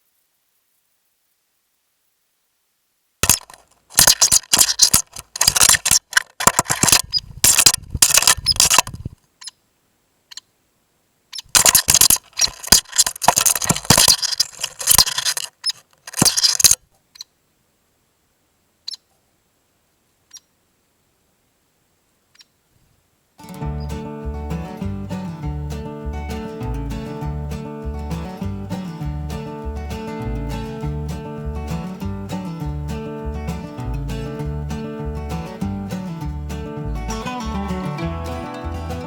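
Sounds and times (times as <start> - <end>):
woodpecker knocking: 11.4 - 16.8.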